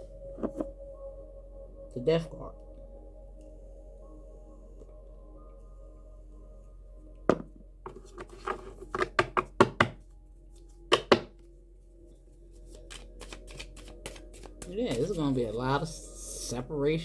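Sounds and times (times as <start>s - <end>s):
faint background music: 0.0s - 17.0s
cards tapping on a tabletop: 10.9s - 11.3s.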